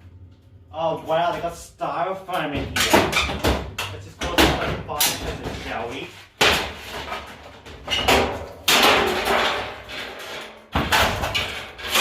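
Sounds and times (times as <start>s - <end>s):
metal clattering bangs: 2.5s - 12.0s.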